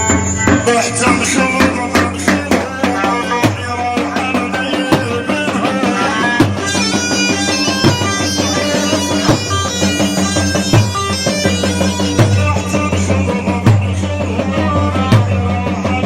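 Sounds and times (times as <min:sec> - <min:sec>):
drum strokes: 0:00.0 - 0:16.0
reedy wind instrument melody: 0:02.6 - 0:14.5.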